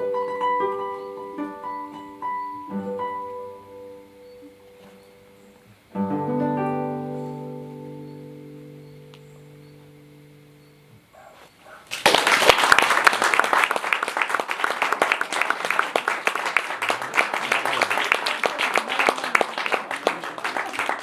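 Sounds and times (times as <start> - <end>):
classical guitar chord ringing: 0.0 - 11.1
audience applause: 11.9 - 21.0.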